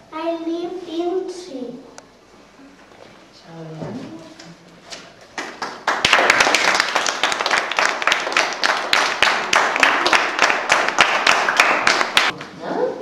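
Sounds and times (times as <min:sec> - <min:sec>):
children clapping: 0:05.3 - 0:12.4.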